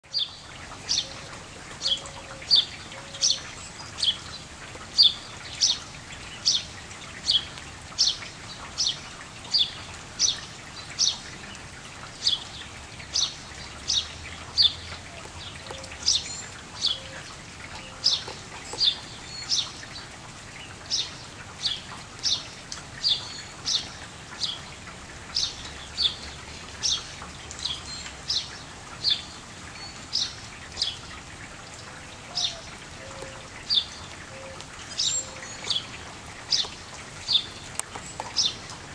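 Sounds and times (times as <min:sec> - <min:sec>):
rain falling: 0:00.0 - 0:38.9.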